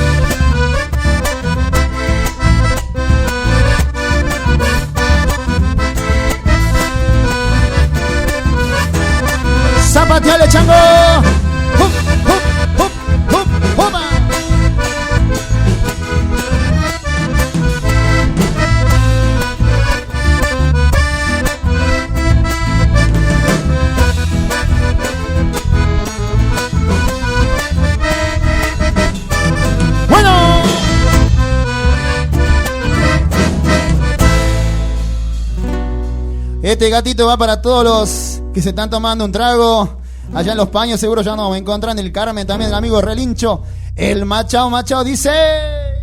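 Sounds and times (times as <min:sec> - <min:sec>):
accordion-led folk band playing: 0:00.0 - 0:36.6.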